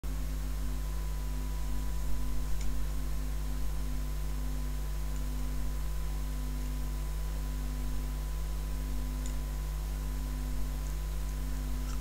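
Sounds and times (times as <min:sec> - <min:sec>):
electrical mains hum: 0:00.0 - 0:12.0
small tick: 0:09.2 - 0:09.4.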